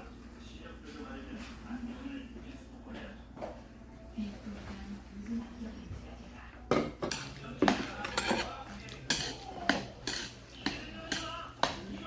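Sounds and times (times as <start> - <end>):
utensils clinking against dishes: 6.7 - 12.0.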